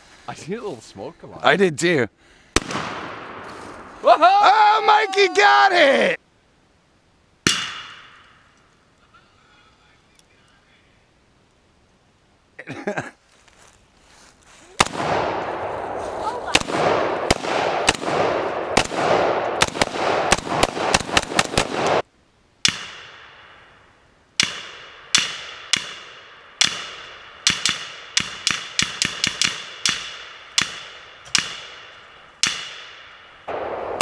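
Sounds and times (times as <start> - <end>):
rifle shots echoing: 2.6 - 4.0, 14.8 - 22.0, 24.4 - 34.0.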